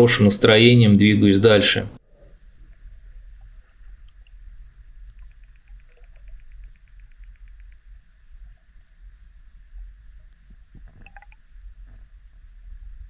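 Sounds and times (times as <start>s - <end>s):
underwater low rumble: 2.1s - 13.0s
quick faint clicks: 5.0s - 7.9s.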